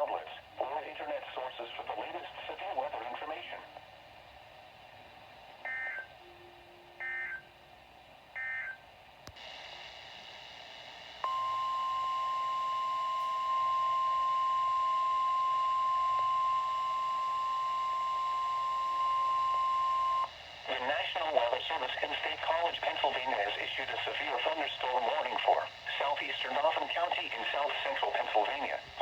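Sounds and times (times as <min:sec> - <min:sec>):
single-pitch alarm tone: 0:11.2 - 0:20.3.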